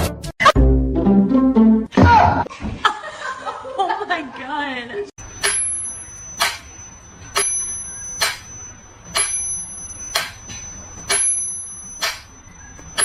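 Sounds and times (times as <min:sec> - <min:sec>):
sharp ringing taps: 0:05.2 - 0:13.0
thin high-pitched tone: 0:05.2 - 0:13.0.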